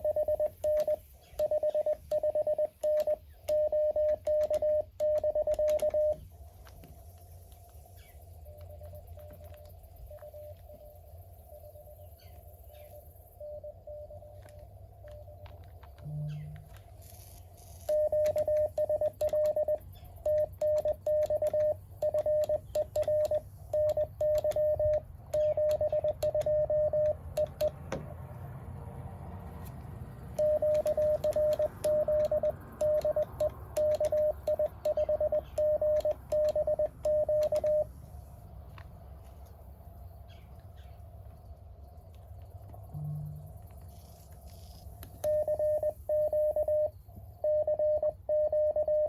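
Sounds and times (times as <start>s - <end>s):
morse code beeping: 0.0s - 6.8s, 8.4s - 12.1s, 12.8s - 16.9s, 17.6s - 28.2s, 30.2s - 38.0s, 45.1s - 49.0s.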